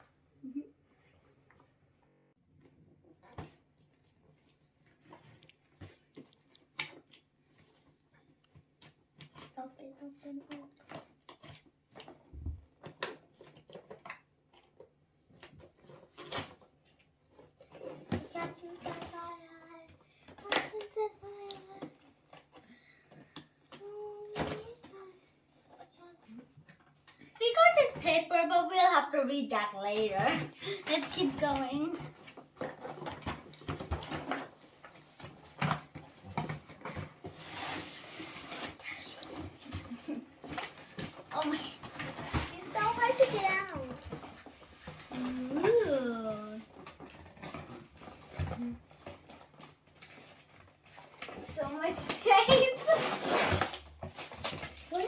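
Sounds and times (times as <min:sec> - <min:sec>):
packaging rustling: 0:29.9 - 0:55.0.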